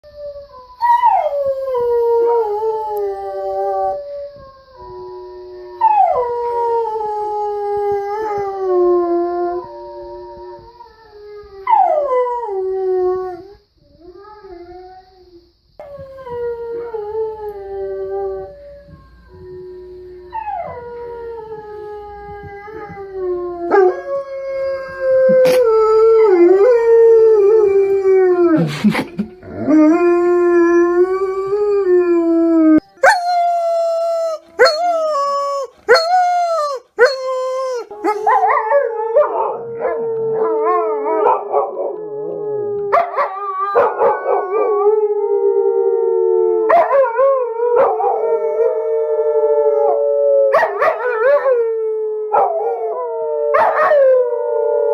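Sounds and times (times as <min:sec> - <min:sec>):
dogs howling: 0:15.8 - 0:28.6, 0:29.4 - 0:54.9.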